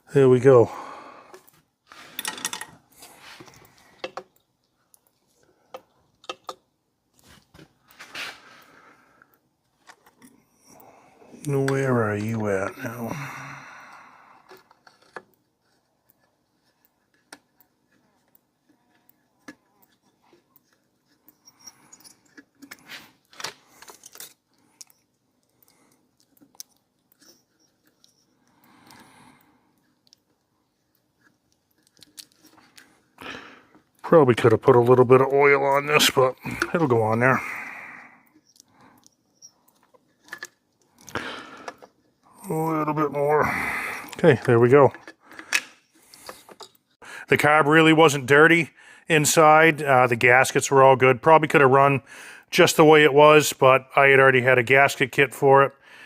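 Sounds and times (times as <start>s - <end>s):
rustling scrape: 8.0s - 8.6s
tools clicking and rattling: 21.4s - 25.6s.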